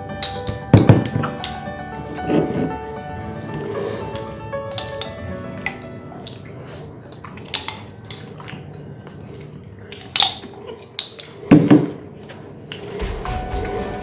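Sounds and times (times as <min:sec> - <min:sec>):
loud knocks: 0:12.9 - 0:14.0.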